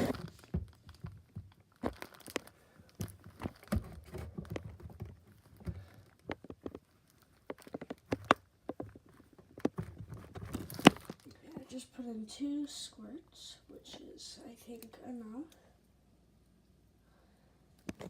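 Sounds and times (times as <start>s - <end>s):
slime crackling and popping: 1.5s - 3.8s.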